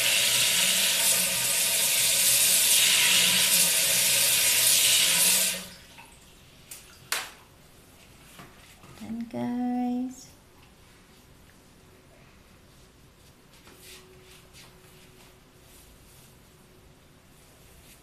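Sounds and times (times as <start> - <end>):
water running: 0.0 - 7.4.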